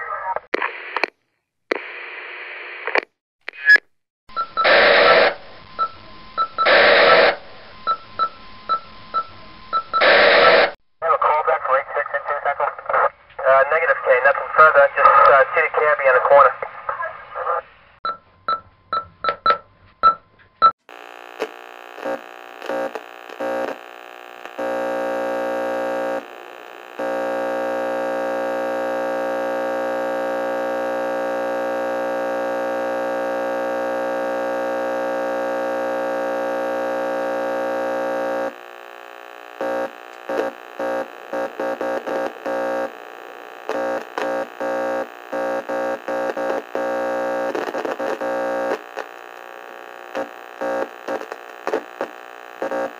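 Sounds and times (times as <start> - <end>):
buzzy electronic tone: 21.0 - 52.9.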